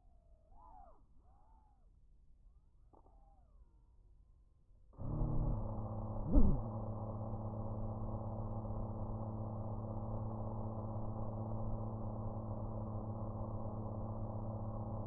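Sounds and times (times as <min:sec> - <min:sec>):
drone motors humming: 0:05.0 - 0:15.0.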